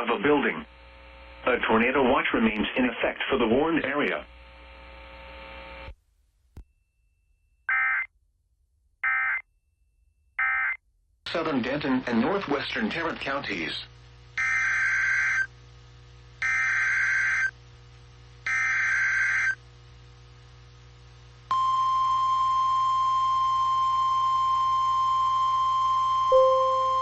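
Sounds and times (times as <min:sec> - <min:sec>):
steady alarm tone: 0:26.3 - 0:27.0.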